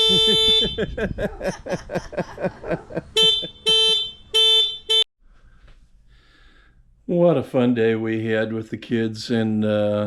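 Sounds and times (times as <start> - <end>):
motorcycle horn beeps: 0.0 - 1.0, 3.2 - 5.1
person laughing rapidly: 0.0 - 3.7.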